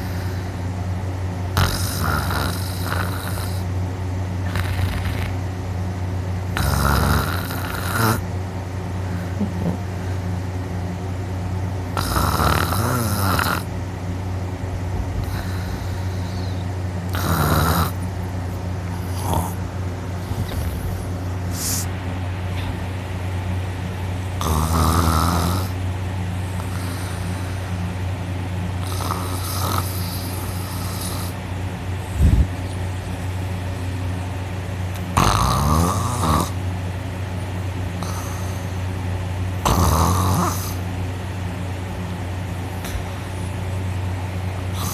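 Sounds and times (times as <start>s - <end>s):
steady low hum: 0.0s - 44.9s
person snoring loudly: 1.5s - 3.7s, 4.4s - 5.4s, 6.6s - 8.2s, 12.0s - 13.7s, 15.2s - 18.1s, 18.9s - 19.6s, 20.2s - 21.9s, 24.4s - 25.8s, 28.8s - 31.4s, 35.1s - 36.6s, 39.6s - 40.8s.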